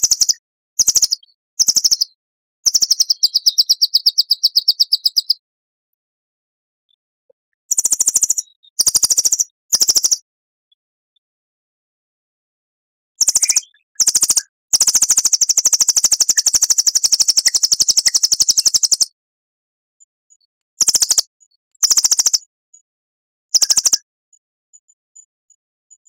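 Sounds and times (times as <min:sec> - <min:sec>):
songbird rattling trill: 0:00.0 - 0:02.1, 0:02.7 - 0:05.4, 0:07.7 - 0:10.2, 0:13.2 - 0:19.2, 0:20.8 - 0:22.4, 0:23.6 - 0:24.0.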